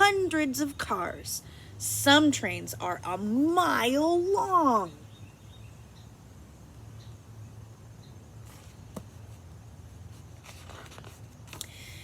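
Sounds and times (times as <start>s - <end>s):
soft rustles: 8.4s - 11.6s.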